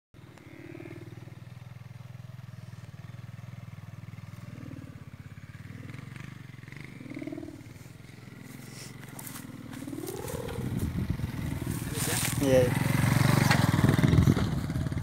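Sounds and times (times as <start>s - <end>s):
kite hummer buzzing: 4.0s - 15.0s.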